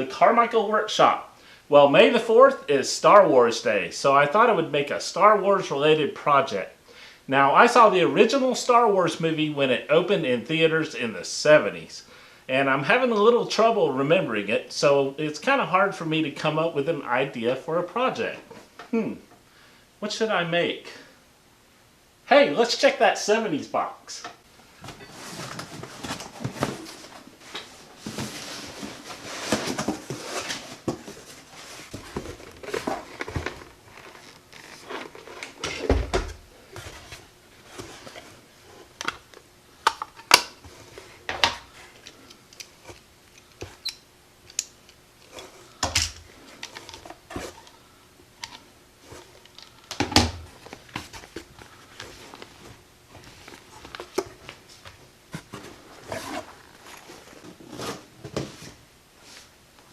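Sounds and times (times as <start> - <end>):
rustling and crinkling: 24.6 - 43.9, 45.2 - 59.5.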